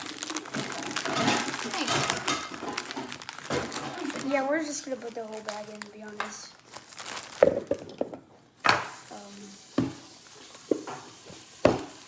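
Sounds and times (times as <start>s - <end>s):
cookies clattering into bowl: 0.0s - 9.0s.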